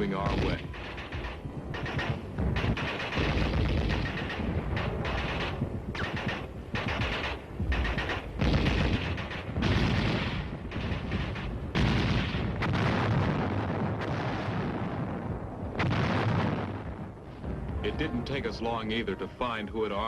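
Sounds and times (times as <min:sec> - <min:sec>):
gunfire bursts: 0:00.0 - 0:14.6
machine-gun fire: 0:00.0 - 0:14.6.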